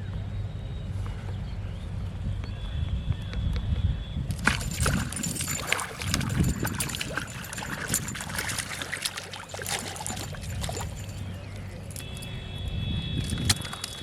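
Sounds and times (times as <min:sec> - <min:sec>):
water splashing and trickling: 0:04.3 - 0:12.4, 0:13.2 - 0:14.0.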